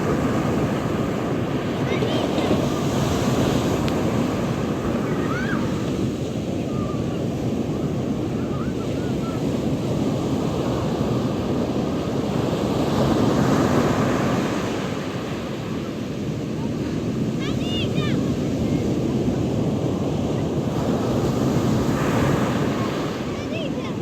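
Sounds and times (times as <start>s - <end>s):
wind buffeting microphone: 0.0s - 13.2s
sea surf washing onto beach: 0.0s - 24.0s.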